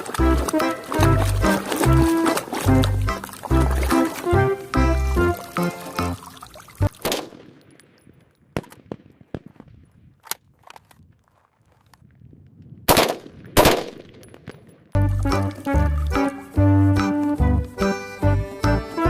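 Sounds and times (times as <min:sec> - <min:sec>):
cheerful music: 0:00.0 - 0:06.5, 0:15.0 - 0:19.0.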